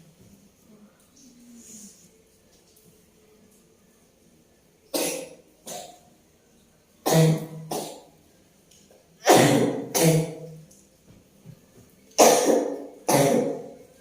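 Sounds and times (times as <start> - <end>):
woman coughing: 9.2 - 10.5, 12.2 - 13.6.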